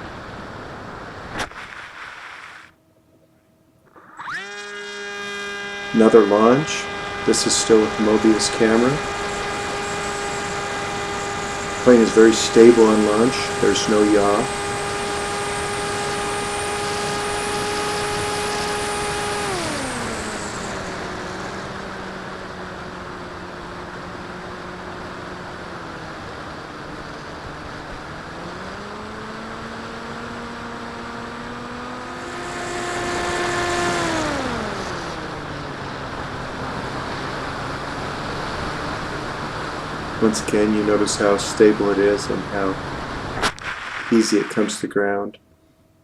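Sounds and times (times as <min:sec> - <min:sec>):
electric motor and propeller whining: 0:03.9 - 0:44.8
wind hiss: 0:05.1 - 0:25.6, 0:26.2 - 0:44.9.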